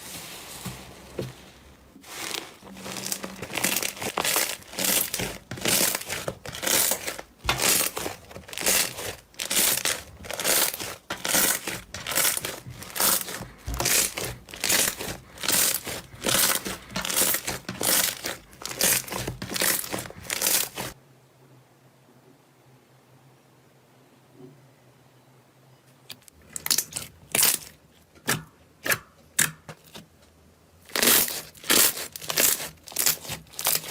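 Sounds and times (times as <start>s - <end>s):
slime crackling when squeezed: 2.8s - 21.0s.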